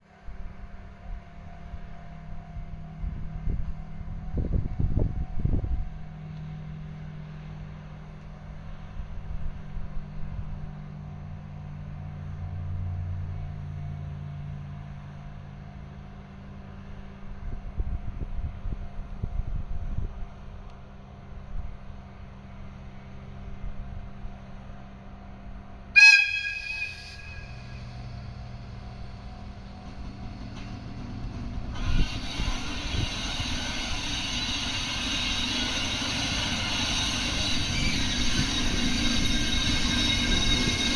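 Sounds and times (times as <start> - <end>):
locomotive rumble: 0.1 - 40.9
locomotive whistle blast: 25.9 - 28.1.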